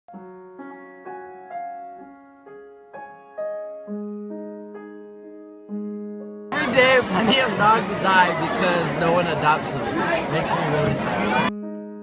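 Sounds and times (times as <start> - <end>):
slow gentle piano music: 0.1 - 6.5.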